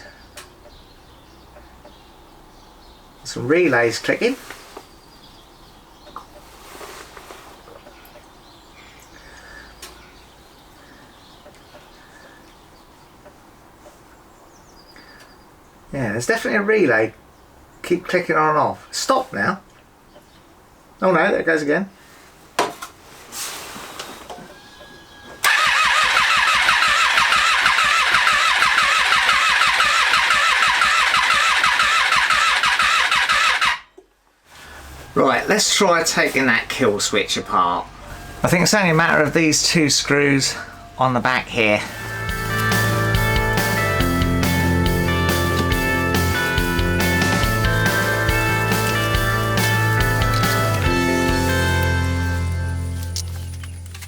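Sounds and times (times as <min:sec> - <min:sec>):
starter motor cranking engine: 0:25.4 - 0:33.8, 0:41.9 - 0:54.0
relays clicking: 0:42.0 - 0:54.0.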